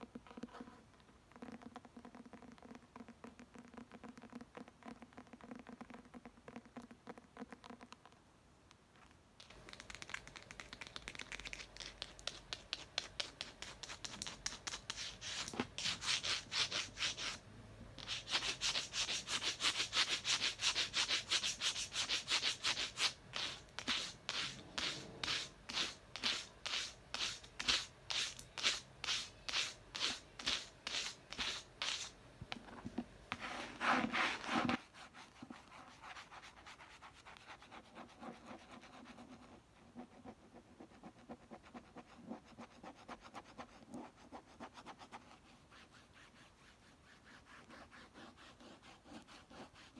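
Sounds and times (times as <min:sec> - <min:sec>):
rapid scratching on a book: 0:09.4 - 0:17.4, 0:18.0 - 0:32.1, 0:33.3 - 0:49.9.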